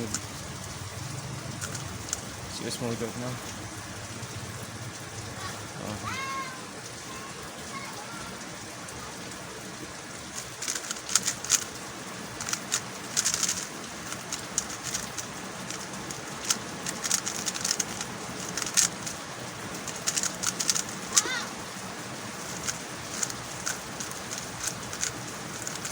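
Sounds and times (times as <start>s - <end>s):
puzzle cube clicking: 1.6s - 2.3s, 10.4s - 11.8s, 12.4s - 21.5s, 22.4s - 25.9s.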